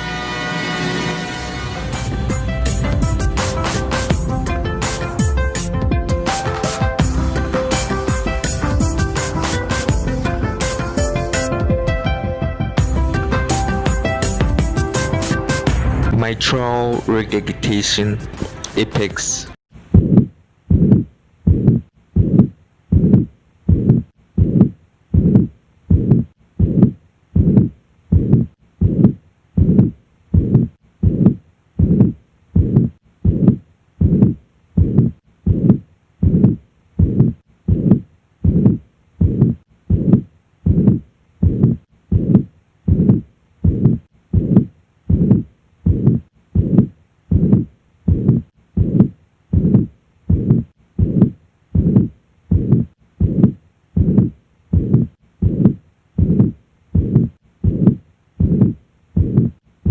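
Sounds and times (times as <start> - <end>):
heartbeat with murmur: 19.8 - 59.9.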